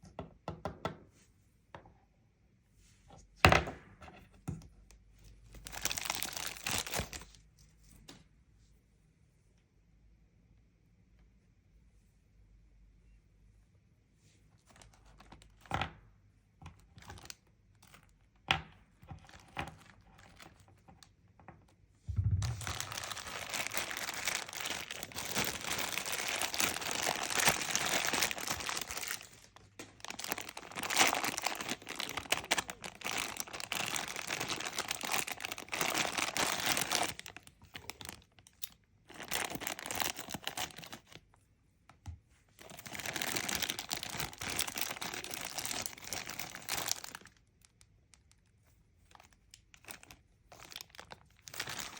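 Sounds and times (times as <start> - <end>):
packaging crinkling and tearing: 5.5 - 7.4, 17.0 - 18.2, 19.2 - 20.7, 22.4 - 41.3, 42.6 - 48.5, 49.1 - 51.9.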